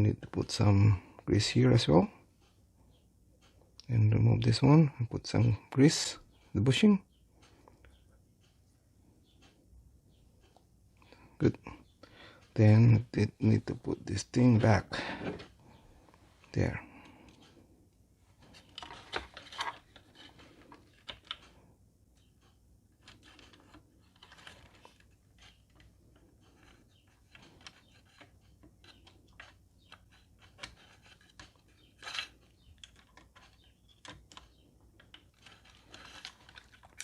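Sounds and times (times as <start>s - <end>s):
small gear parts clicking and scraping: 23.0s - 37.0s.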